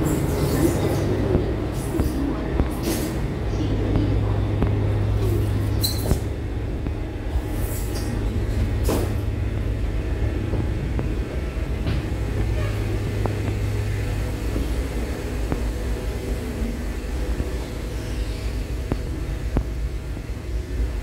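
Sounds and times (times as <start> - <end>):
vehicle engine hum: 0.0 - 21.0.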